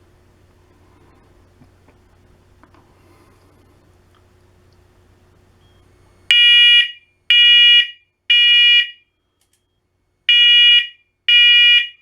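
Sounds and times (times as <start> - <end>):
smoke alarm beeping: 5.6 - 12.0.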